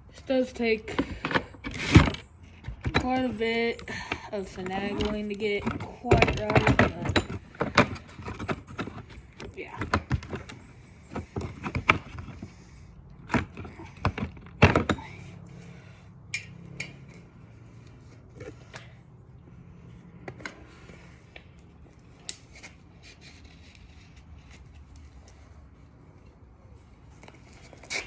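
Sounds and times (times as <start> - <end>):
tire knocks and thumps: 0.8 - 21.6.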